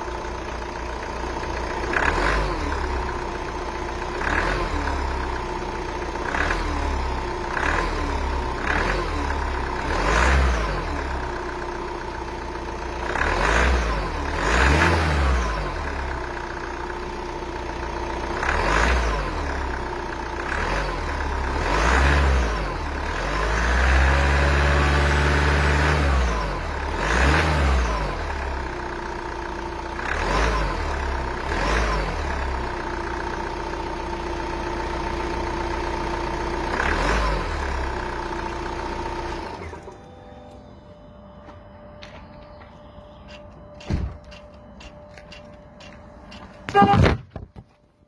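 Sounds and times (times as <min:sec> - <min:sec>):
diesel engine revving: 0:00.0 - 0:47.3
steady whine: 0:38.6 - 0:48.0.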